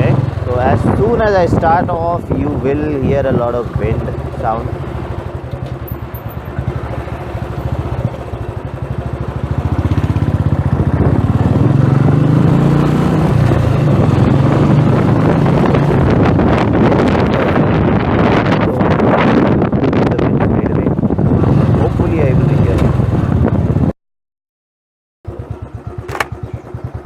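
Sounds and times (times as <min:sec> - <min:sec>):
wind noise on microphone: 0:00.0 - 0:03.5, 0:09.9 - 0:23.9
motorcycle engine thumping: 0:04.1 - 0:11.7, 0:25.3 - 0:27.0.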